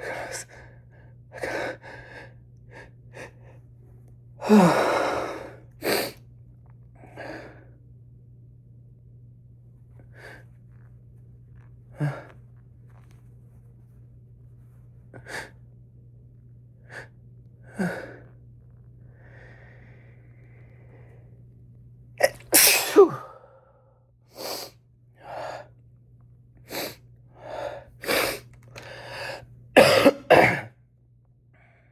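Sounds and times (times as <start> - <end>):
woman sneezing: 22.2 - 23.3.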